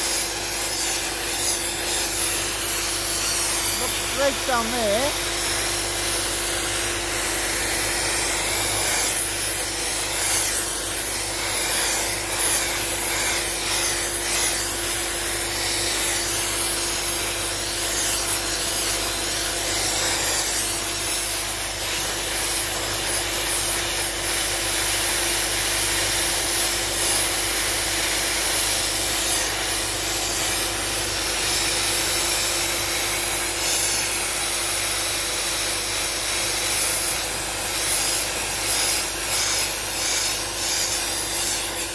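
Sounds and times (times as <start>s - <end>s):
sandblast gun hissing: 0.0s - 41.9s
steady hum: 0.4s - 5.6s.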